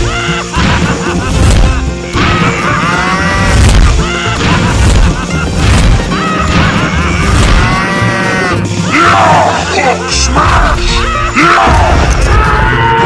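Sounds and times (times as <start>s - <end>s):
loud background music: 0.0s - 13.0s
crash sound effects: 3.4s - 7.8s.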